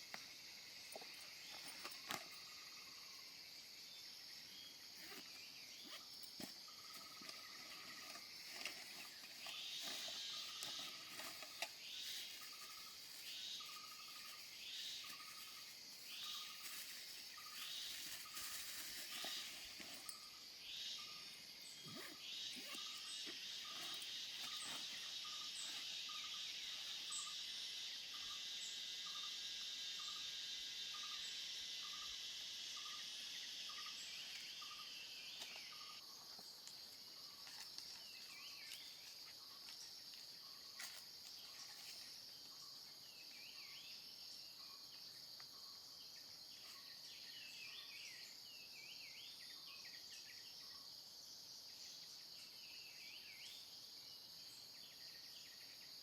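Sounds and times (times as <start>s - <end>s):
high insect drone: 0.0s - 56.0s
birds chirping: 4.7s - 27.3s.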